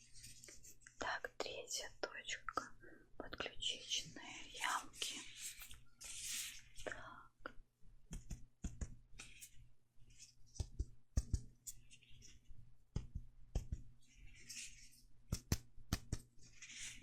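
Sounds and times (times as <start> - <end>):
fingers tapping on chest: 8.1 - 9.0, 10.5 - 11.6, 12.9 - 13.9, 15.3 - 16.3.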